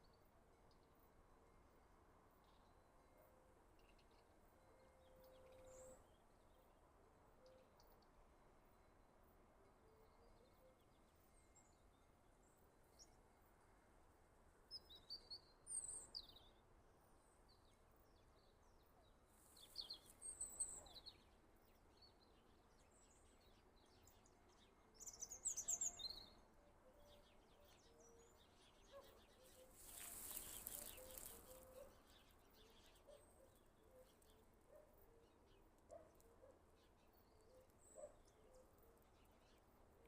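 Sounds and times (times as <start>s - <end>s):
faint forest ambience: 0.0s - 40.0s
birds chirping: 29.7s - 31.9s.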